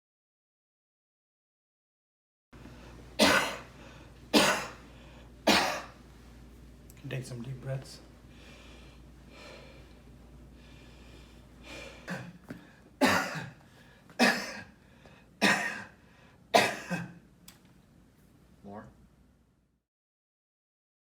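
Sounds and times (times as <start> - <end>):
person coughing: 3.2 - 3.7, 4.3 - 4.8, 5.5 - 6.0, 12.0 - 12.4, 13.0 - 13.6, 14.2 - 14.8, 15.4 - 17.2
person breathing deeply: 8.3 - 12.1.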